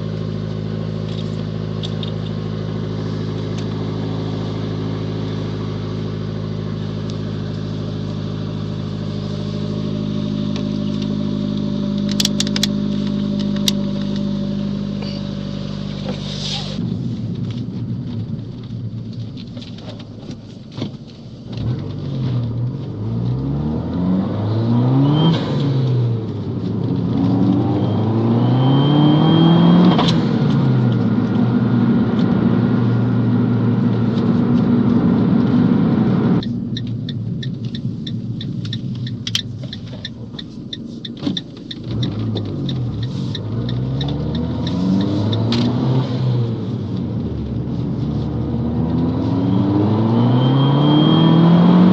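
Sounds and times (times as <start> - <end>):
car engine accelerating: 0.0 - 51.9
high turbo whistle: 27.6 - 29.7, 49.2 - 51.9.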